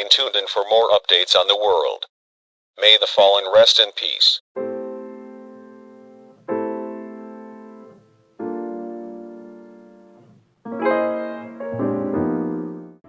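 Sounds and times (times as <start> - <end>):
slow piano music: 4.6 - 13.0.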